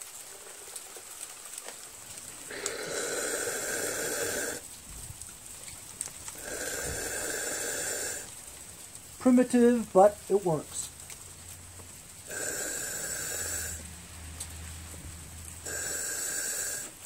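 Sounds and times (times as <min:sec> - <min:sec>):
air blowing into a tank: 0:06.4 - 0:08.3, 0:12.3 - 0:13.9, 0:15.6 - 0:17.0.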